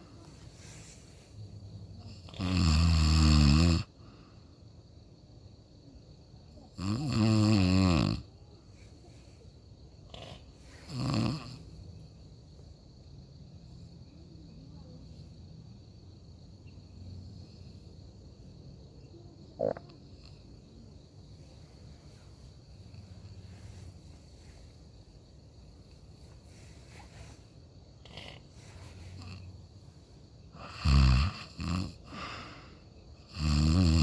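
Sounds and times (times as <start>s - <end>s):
soft low snoring breaths: 0.0s - 4.2s, 6.8s - 12.9s, 21.3s - 29.9s, 30.5s - 34.0s
person snorting while snoring: 2.1s - 3.9s, 6.8s - 8.2s, 10.1s - 11.7s, 28.0s - 29.5s, 30.6s - 32.5s, 33.3s - 34.0s.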